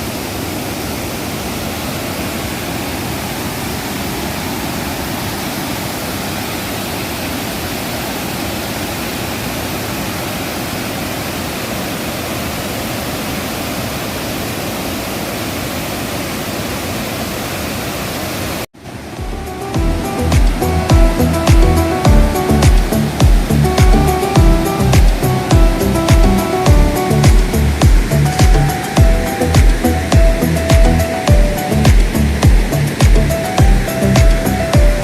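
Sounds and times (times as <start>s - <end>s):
waterfall roaring: 0.0s - 35.0s
music: 19.2s - 35.0s.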